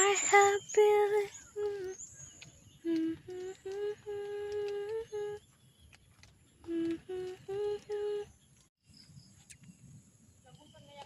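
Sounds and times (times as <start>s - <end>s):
person humming a tune: 0.0s - 2.0s, 2.8s - 5.4s, 6.7s - 8.3s.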